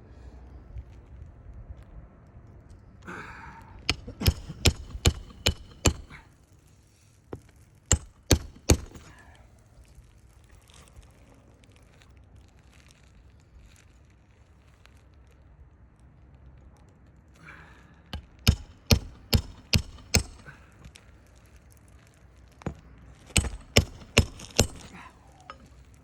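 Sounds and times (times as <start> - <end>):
hammer striking roofing nails: 3.9 - 6.3, 7.9 - 9.3, 18.1 - 21.0, 22.7 - 26.0.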